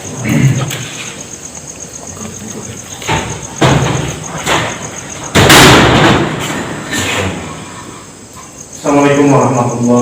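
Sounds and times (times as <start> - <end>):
old door bangs and thuds: 3.0 - 7.0.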